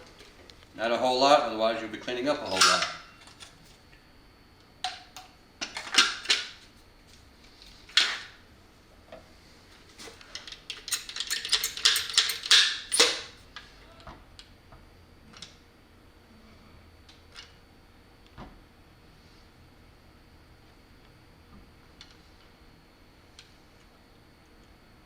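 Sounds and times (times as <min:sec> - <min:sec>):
tools clicking and knocking: 0:10.3 - 0:13.3.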